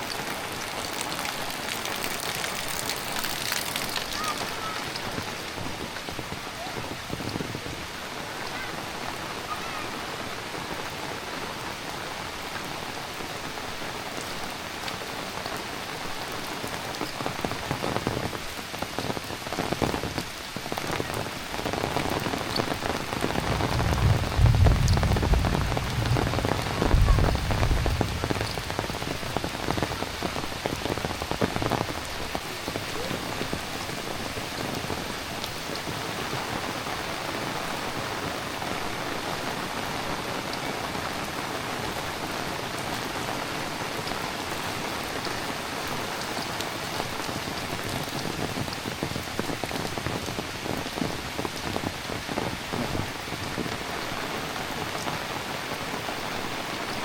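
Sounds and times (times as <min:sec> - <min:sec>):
heavy rain falling: 0:00.0 - 0:57.0
low rumble: 0:23.6 - 0:29.3.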